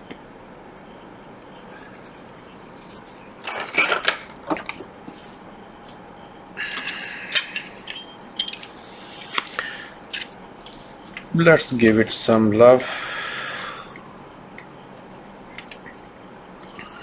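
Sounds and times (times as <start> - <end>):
metal hand tools clattering: 3.4 - 4.3.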